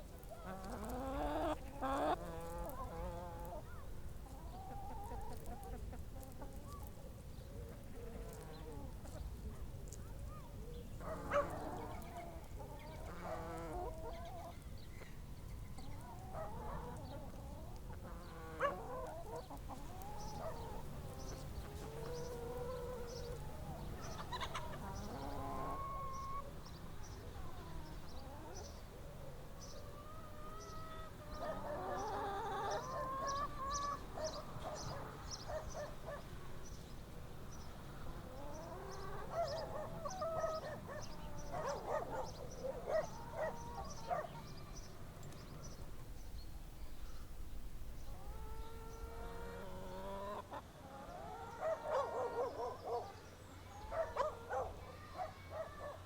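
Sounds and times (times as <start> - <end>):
small birds chirping: 0.0 - 50.5
chickens clucking: 0.0 - 53.1.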